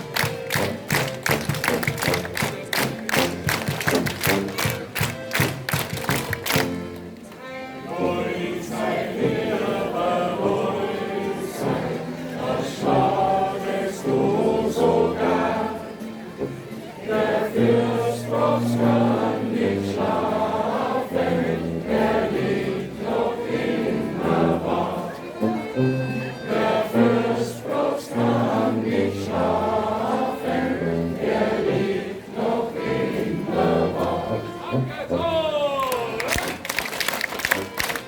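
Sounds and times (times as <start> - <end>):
instruments playing: 0.0 - 9.0, 33.7 - 38.0
group singing in chorus: 7.8 - 16.0, 17.0 - 25.3, 26.4 - 34.6.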